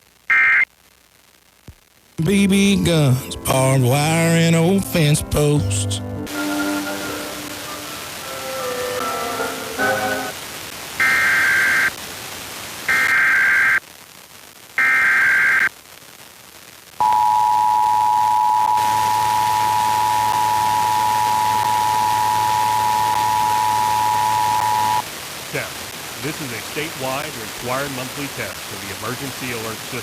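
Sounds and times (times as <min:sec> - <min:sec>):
radio music: 0:00.0 - 0:16.2, 0:16.8 - 0:30.0
two-tone attention signal: 0:17.0 - 0:25.0
raspy warbling data bursts: 0:18.6 - 0:25.0.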